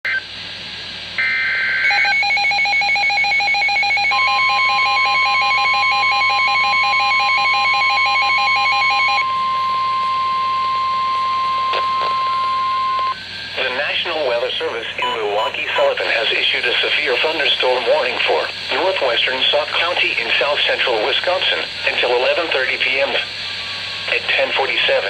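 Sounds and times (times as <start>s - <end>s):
rapid pulsing alarm beep: 1.2s - 16.8s
steady warning alarm tone: 1.2s - 18.1s.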